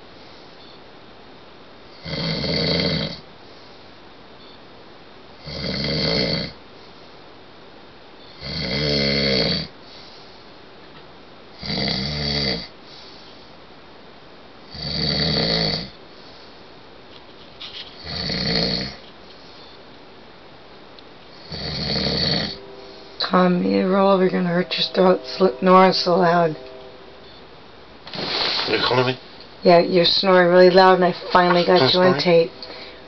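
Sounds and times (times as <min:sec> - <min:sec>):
man snoring loudly: 0:02.0 - 0:03.2, 0:05.4 - 0:06.6, 0:08.4 - 0:09.7, 0:11.6 - 0:12.7, 0:14.7 - 0:16.0, 0:18.0 - 0:19.0, 0:21.4 - 0:22.6.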